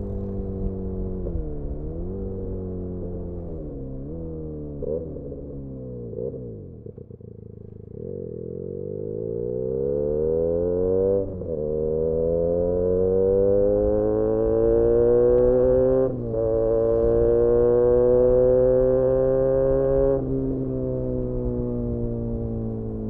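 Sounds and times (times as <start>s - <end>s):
motorcycle engine revving: 0.0s - 23.0s.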